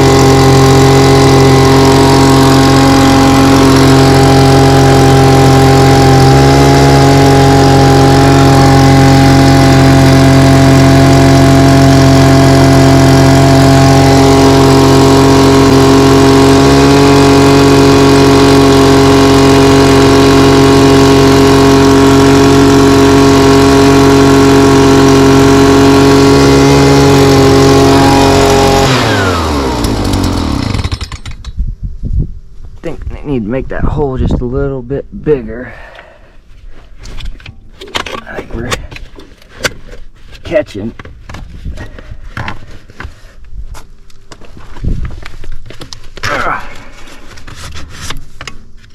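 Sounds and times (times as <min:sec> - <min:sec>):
small engine running: 0:00.0 - 0:31.6.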